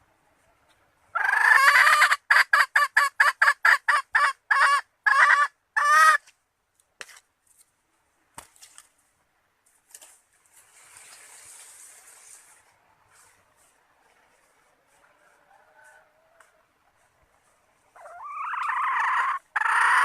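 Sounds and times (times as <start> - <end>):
hen calling and clucking: 0.0 - 6.3, 12.4 - 20.0.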